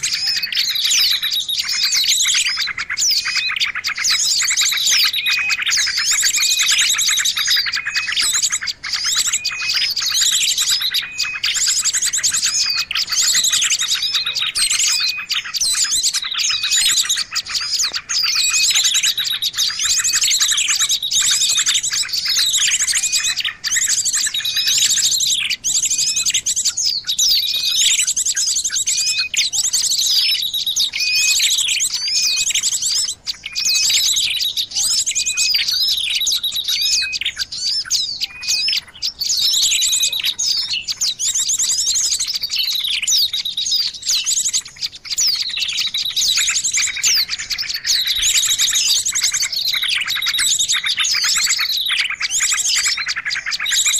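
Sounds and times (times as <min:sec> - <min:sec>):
songbirds chirping and trilling: 0:00.0 - 0:53.9.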